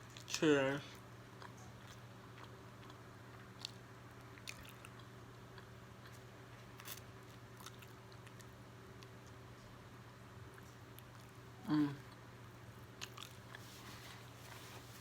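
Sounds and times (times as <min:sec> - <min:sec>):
chewing and mouth sounds: 0:00.0 - 0:09.4, 0:10.4 - 0:13.7.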